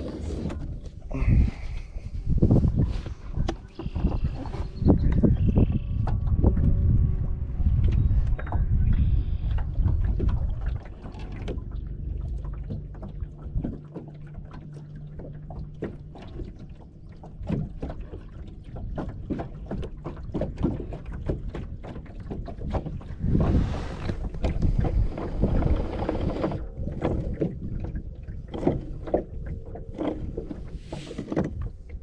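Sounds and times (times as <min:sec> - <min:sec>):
wind gusting on microphone: 0:00.0 - 0:10.8, 0:22.8 - 0:32.0
steady low hum: 0:00.0 - 0:21.8.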